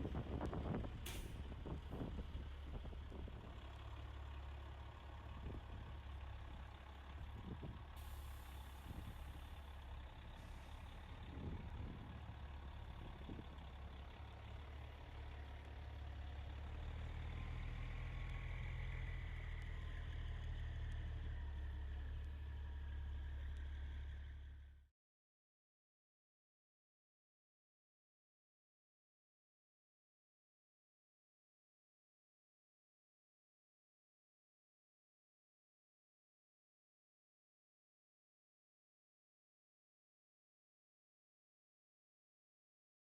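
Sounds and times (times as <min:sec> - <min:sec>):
truck diesel engines rumbling: 0:00.0 - 0:24.8.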